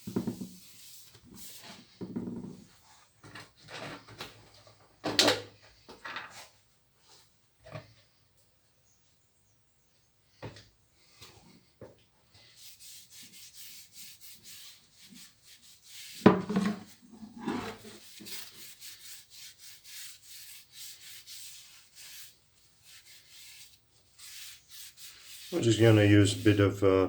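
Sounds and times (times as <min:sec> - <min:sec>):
hand sanding strokes: 0:00.1 - 0:02.0, 0:12.4 - 0:16.2, 0:17.6 - 0:26.8.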